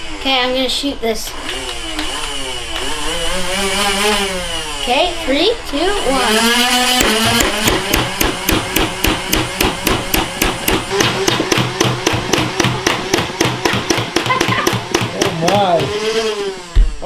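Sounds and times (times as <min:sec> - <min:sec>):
steady motor hum: 0:00.0 - 0:17.0
rapid rattle of foam balls firing: 0:06.7 - 0:17.0.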